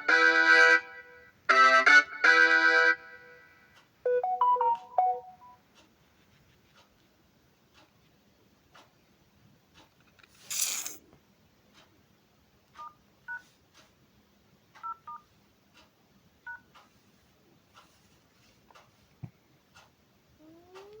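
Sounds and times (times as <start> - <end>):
phone keypad beeps: 4.1 - 5.6, 14.8 - 15.2, 16.5 - 16.7.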